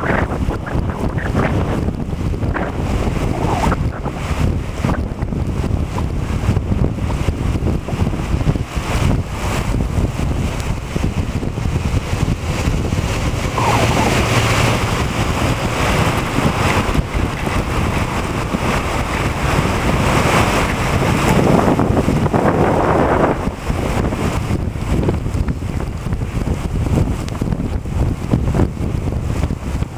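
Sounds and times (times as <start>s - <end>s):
wind buffeting microphone: 0.0s - 29.9s
heavy rain rushing: 7.9s - 27.5s.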